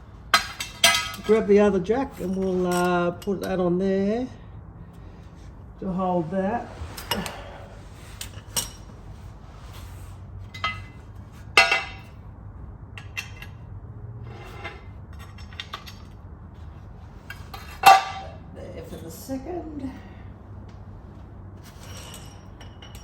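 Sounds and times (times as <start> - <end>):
metal tools clinking and clanking: 0.3 - 3.6, 7.0 - 8.9, 9.8 - 12.2, 13.0 - 13.6, 14.4 - 16.2, 17.2 - 19.1, 21.6 - 23.0.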